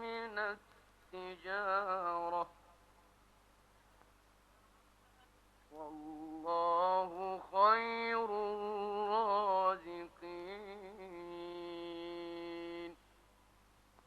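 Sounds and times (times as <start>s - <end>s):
man reciting melodically: 0.0s - 3.0s, 5.7s - 13.0s.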